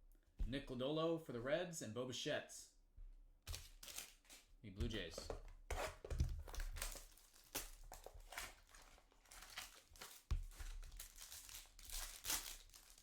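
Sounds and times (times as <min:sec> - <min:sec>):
cards and plastic holders rustling: 0:03.5 - 0:13.0.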